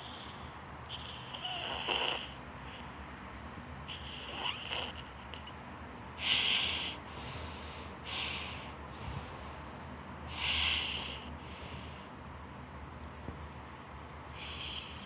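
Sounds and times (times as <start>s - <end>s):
child snoring: 0.0s - 2.4s, 3.9s - 5.5s, 6.2s - 7.0s, 10.3s - 11.3s, 14.4s - 15.0s.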